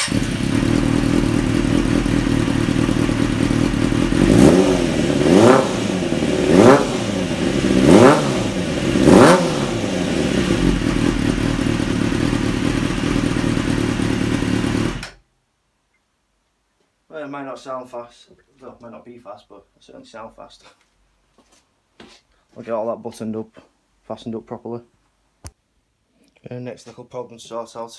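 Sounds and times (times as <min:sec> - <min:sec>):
motorcycle engine idling and revving: 0:00.0 - 0:15.2.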